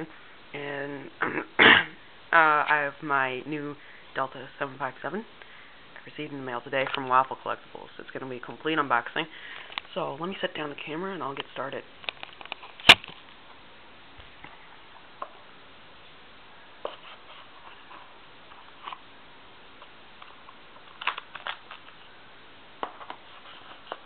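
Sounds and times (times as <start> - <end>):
taps clicks and rustles: 12.0 - 13.3.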